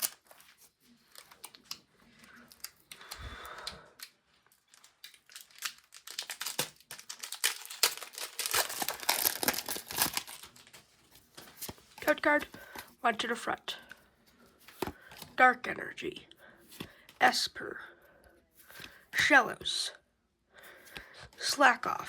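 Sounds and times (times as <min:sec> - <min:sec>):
foil wrapper crinkling and tearing: 0:00.0 - 0:03.2, 0:04.0 - 0:11.0.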